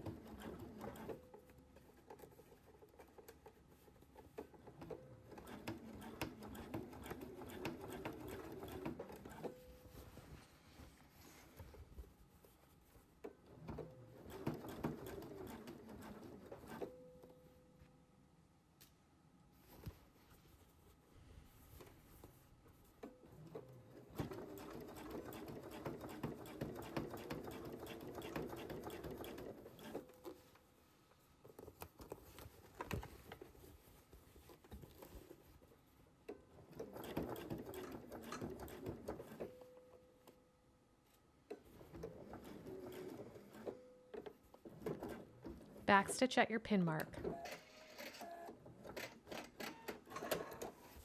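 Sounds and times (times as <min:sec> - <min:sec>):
sewing machine stitching: 0:00.0 - 0:09.7, 0:13.4 - 0:17.0, 0:23.3 - 0:30.4, 0:36.5 - 0:39.7, 0:41.6 - 0:46.3, 0:47.0 - 0:51.0.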